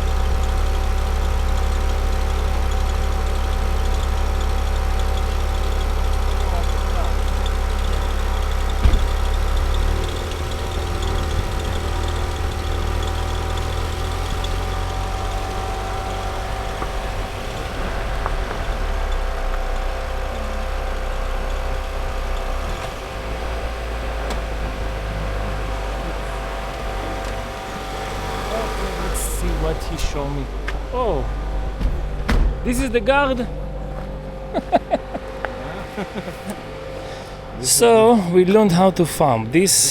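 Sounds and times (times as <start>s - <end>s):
vehicle engine rumbling: 0.0s - 39.9s
sharp knock: 8.8s - 9.3s.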